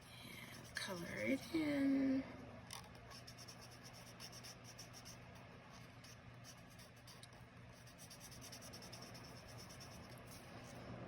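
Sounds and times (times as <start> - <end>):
pen scratching on paper: 3.1 - 5.2, 7.8 - 10.2.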